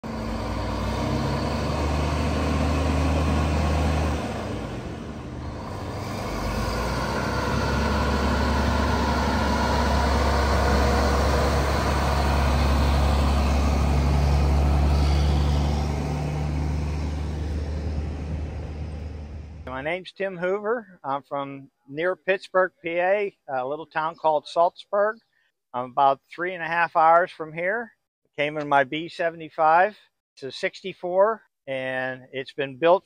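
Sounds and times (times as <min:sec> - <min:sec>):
diesel truck engine droning: 0:00.0 - 0:19.7.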